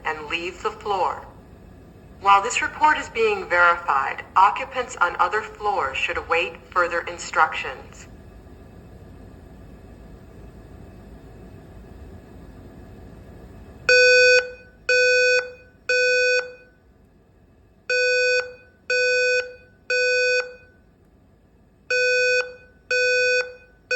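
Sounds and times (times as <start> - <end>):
fire alarm beeps: 13.9 - 16.8, 17.9 - 20.8, 21.9 - 23.9.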